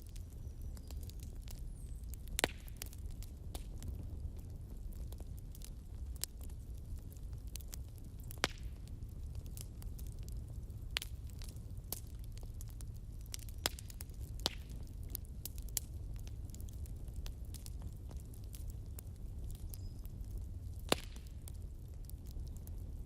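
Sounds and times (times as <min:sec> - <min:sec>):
fire rumbling: 0:00.0 - 0:23.0
logs crackling and popping: 0:00.0 - 0:23.0
sharp fire snaps: 0:00.0 - 0:23.0.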